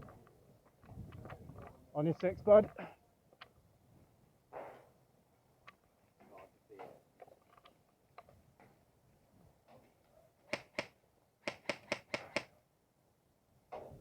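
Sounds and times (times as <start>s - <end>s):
airsoft guns firing: 10.5s - 12.5s.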